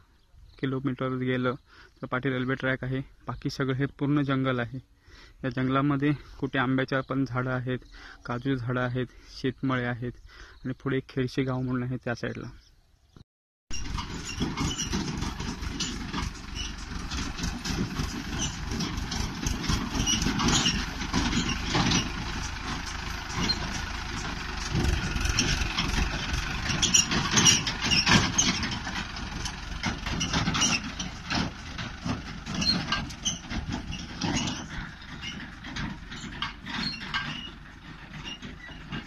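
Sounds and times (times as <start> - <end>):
diesel engine under load: 13.7 - 39.0
knocks and clatter: 13.7 - 39.0.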